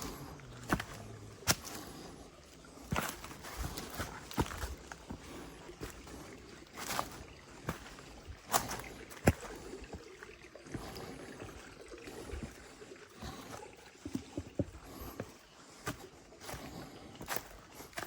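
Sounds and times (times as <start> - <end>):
footsteps through undergrowth: 0.0 - 10.1, 14.1 - 18.0
leaves and twigs crackling: 0.0 - 11.1, 14.9 - 18.0.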